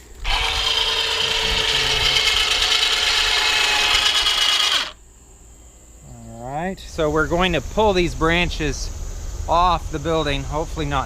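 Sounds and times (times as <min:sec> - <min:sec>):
winch tightening steel cable: 0:00.2 - 0:05.0.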